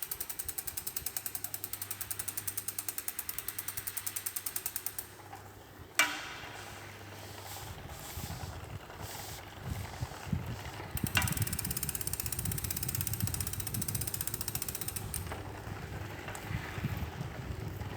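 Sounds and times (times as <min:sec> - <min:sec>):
bike freehub ticking: 0:00.0 - 0:06.1, 0:09.0 - 0:16.7.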